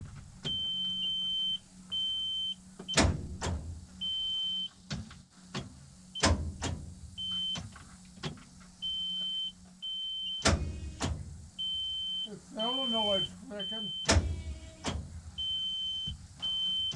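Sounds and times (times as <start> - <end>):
high warning beep: 0.5 - 2.6, 4.0 - 4.7, 8.8 - 10.5, 11.6 - 14.1, 15.4 - 16.9.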